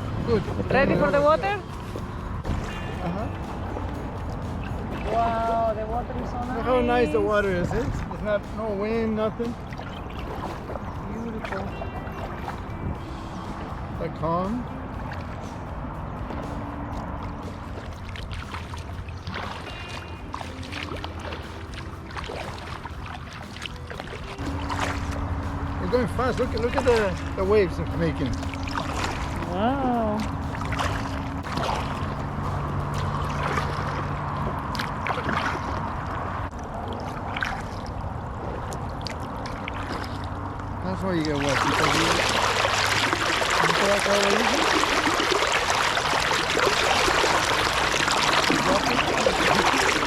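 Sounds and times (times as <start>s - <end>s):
low motor drone: 0.0s - 50.0s
paddles splashing in water: 0.0s - 50.0s
water dripping: 15.0s - 50.0s.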